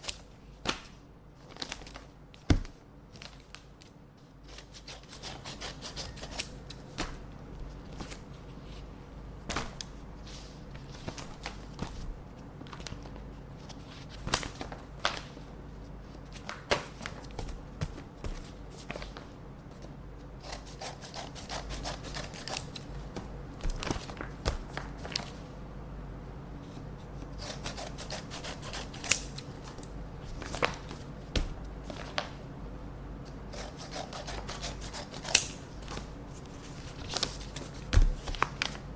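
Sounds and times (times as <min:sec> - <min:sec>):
scissors snipping paper: 0:04.5 - 0:06.8, 0:20.4 - 0:22.9, 0:27.3 - 0:29.5, 0:33.5 - 0:35.6
paper rustling: 0:35.8 - 0:38.9.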